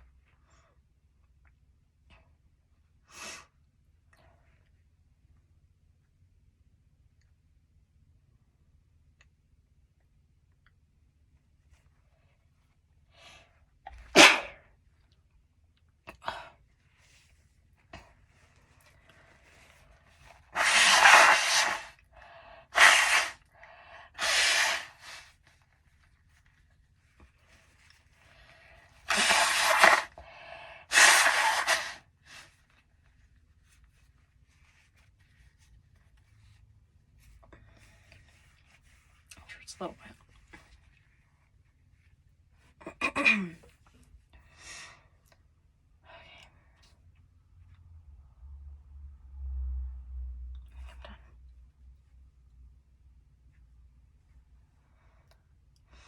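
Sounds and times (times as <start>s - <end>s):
person sneezing: 13.9s - 14.6s, 20.6s - 21.9s, 22.7s - 23.4s, 24.2s - 25.2s, 29.1s - 30.1s, 30.9s - 32.0s
breath intake: 20.5s - 25.3s, 29.1s - 32.0s.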